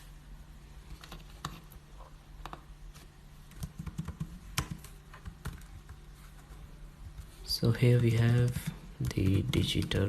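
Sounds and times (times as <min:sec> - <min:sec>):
low steady hum: 0:00.0 - 0:10.0
computer keyboard typing: 0:03.5 - 0:06.0, 0:08.2 - 0:10.0.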